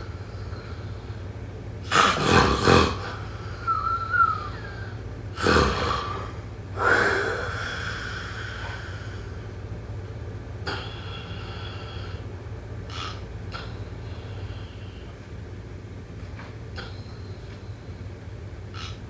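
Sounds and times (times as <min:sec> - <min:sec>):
steady low hum: 0:00.0 - 0:19.0
person snoring: 0:01.9 - 0:04.6, 0:05.4 - 0:09.4.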